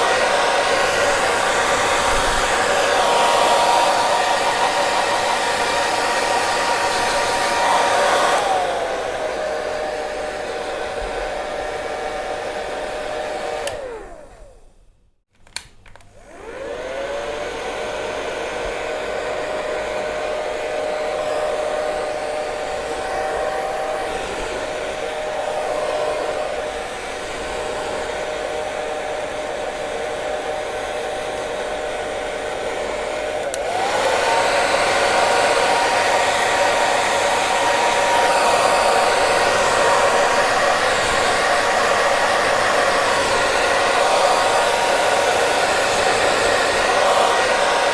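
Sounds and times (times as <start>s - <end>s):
hair dryer running: 0.0s - 14.8s, 15.6s - 47.9s
hair dryer switch click: 13.5s - 14.0s, 15.4s - 16.2s, 33.2s - 34.2s.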